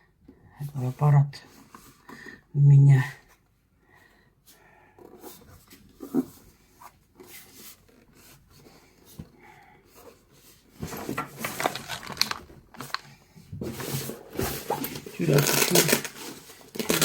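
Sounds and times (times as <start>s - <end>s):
packaging rustling and crinkling: 10.6s - 17.0s.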